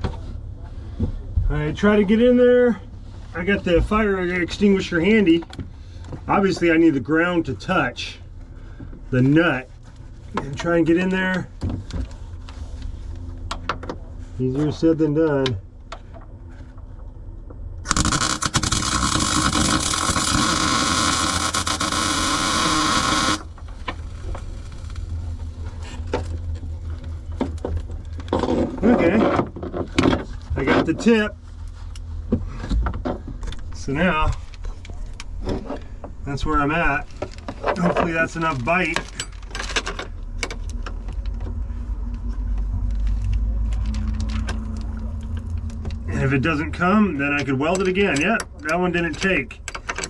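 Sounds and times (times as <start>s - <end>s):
low rumble: 0.0s - 48.2s
low hum: 0.0s - 49.8s
welding arc hiss: 17.9s - 26.0s.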